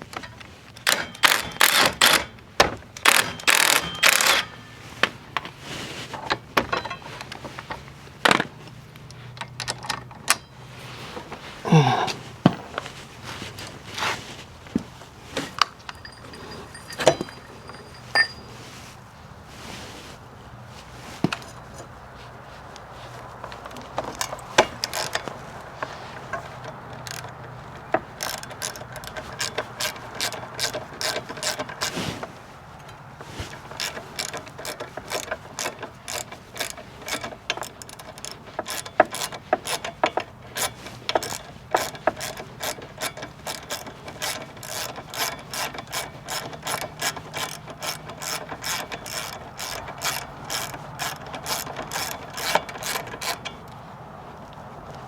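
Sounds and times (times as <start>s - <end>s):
ratchet wrench clicking: 0.8s - 2.3s, 3.0s - 4.6s, 24.1s - 27.6s, 28.2s - 32.0s, 33.6s - 53.7s.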